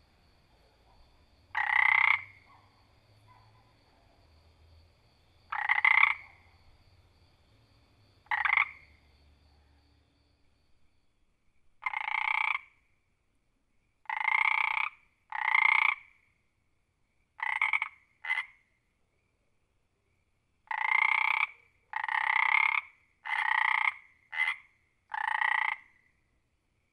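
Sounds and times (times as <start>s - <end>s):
frog croaking: 0.0s - 4.4s, 5.4s - 7.1s, 8.1s - 10.0s, 11.8s - 12.9s, 14.0s - 16.2s, 17.4s - 18.7s, 20.7s - 26.2s.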